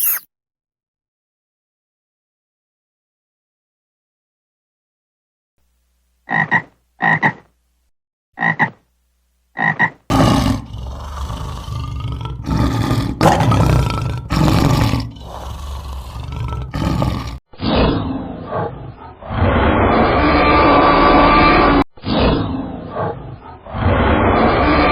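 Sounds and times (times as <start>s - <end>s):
animal roaring: 10.1s - 17.4s.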